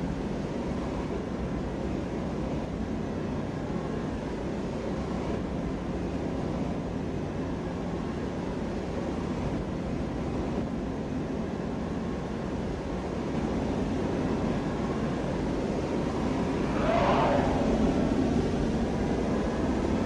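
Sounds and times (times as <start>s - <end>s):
faint hum: 11.4s - 20.0s
low rumbling wind drone: 11.4s - 20.0s.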